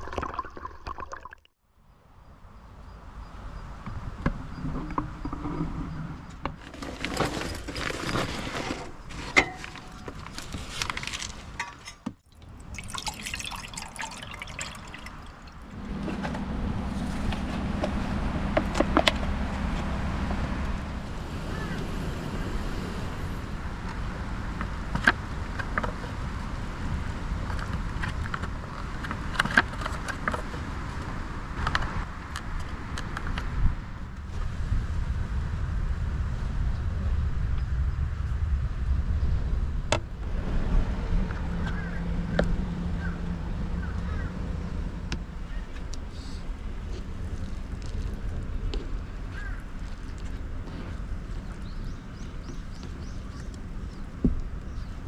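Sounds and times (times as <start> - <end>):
water pouring and splashing: 0.0 - 1.5, 12.2 - 16.3
wind rumbling on microphone: 1.9 - 55.0.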